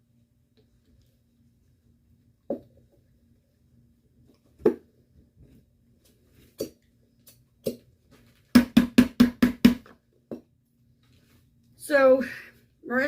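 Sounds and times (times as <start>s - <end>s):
hollow knocks on hard object: 8.5s - 10.5s.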